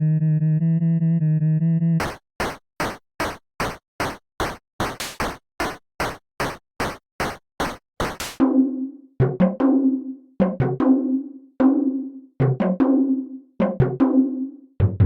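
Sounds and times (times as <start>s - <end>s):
sharp clicks: 2.0s - 8.4s
drum pattern: 2.0s - 8.6s, 9.2s - 9.7s.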